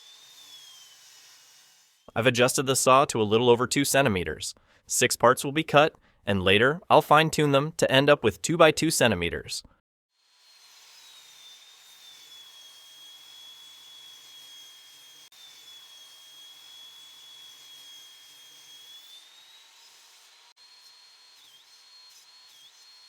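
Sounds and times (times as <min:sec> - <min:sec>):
table saw motor whine: 0:00.0 - 0:02.1, 0:10.2 - 0:23.0
saw cutting wood hiss: 0:00.0 - 0:02.2, 0:10.2 - 0:23.0.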